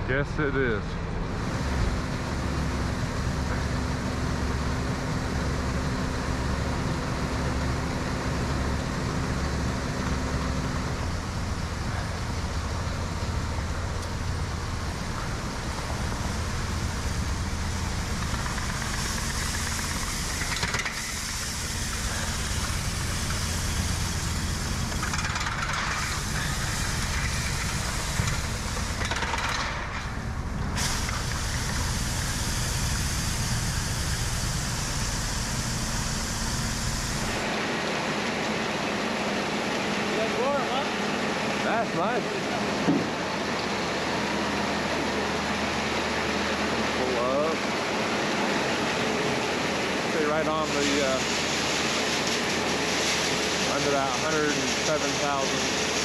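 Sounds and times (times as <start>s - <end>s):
engine humming: 0.0s - 37.5s
hiss: 14.5s - 29.9s, 30.7s - 37.5s, 50.4s - 56.0s.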